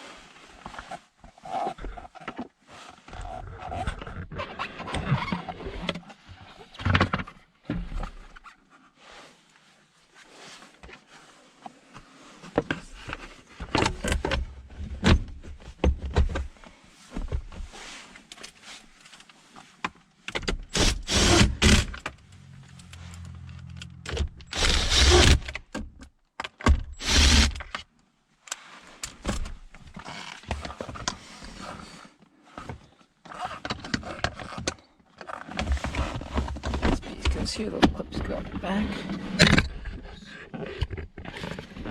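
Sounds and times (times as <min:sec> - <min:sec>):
scraping bursts: 0:20.7 - 0:23.5, 0:24.4 - 0:25.5, 0:27.0 - 0:27.7.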